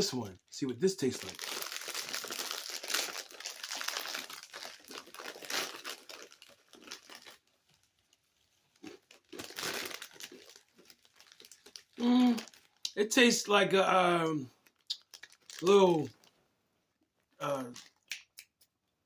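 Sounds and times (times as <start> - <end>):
snack bag crinkling: 1.0 - 13.0, 14.6 - 16.3, 17.2 - 18.6.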